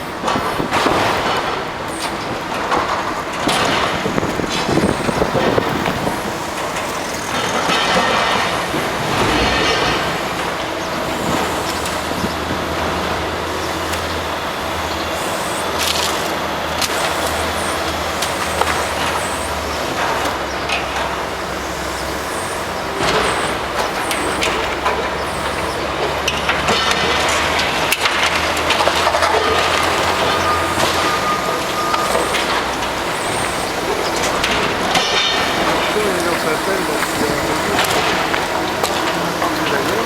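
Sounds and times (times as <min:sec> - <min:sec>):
metal clanks and rubble scraping: 0:00.0 - 0:14.8, 0:16.8 - 0:40.0
heavy machinery engine running: 0:00.0 - 0:40.0.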